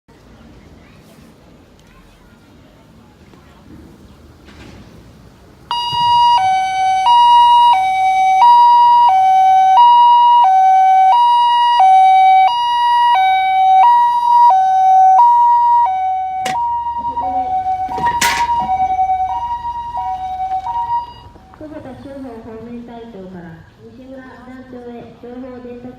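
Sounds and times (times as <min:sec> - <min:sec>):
two-tone ambulance siren: 0:05.7 - 0:21.8.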